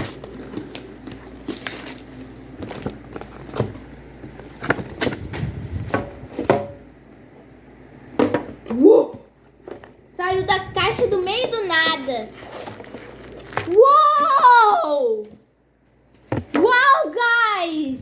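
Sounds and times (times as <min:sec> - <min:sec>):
cardboard packaging rustling: 0:00.0 - 0:06.0, 0:10.3 - 0:14.0.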